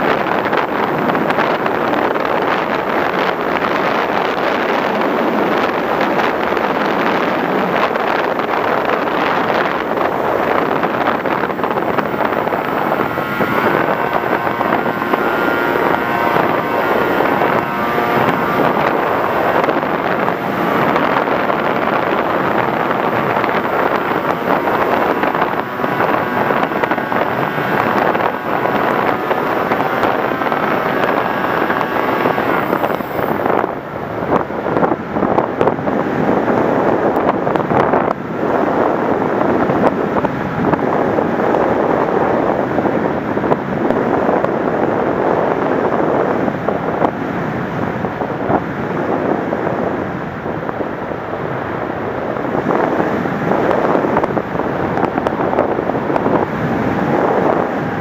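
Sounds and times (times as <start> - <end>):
wind rushing over microphone: 0.0 - 58.0
faint motor whine: 0.2 - 37.3.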